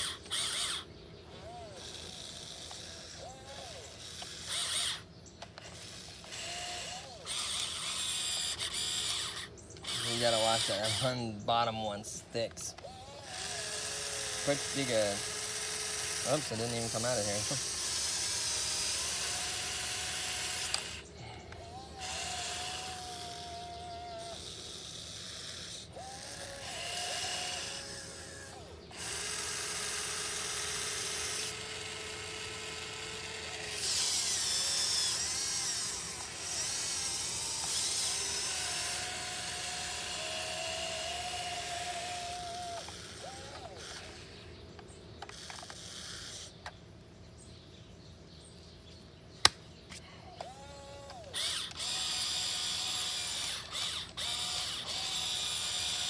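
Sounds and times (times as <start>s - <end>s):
electric gear motors whining: 0.0s - 46.8s, 49.4s - 56.0s
sharp click: 49.4s - 50.5s.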